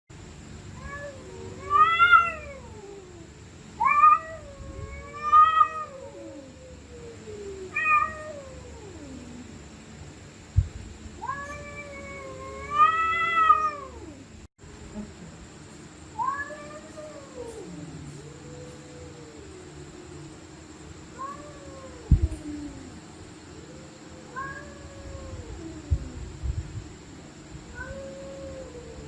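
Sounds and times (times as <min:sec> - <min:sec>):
cats yowling: 0:00.8 - 0:09.6, 0:11.2 - 0:14.2, 0:16.2 - 0:26.3, 0:27.7 - 0:29.0
cat growling: 0:16.5 - 0:20.5.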